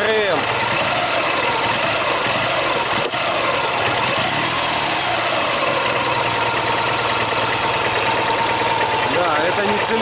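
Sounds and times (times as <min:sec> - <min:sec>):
motorcycle engine idling: 0:00.0 - 0:10.0
ringing clacking gear noise: 0:05.6 - 0:10.0.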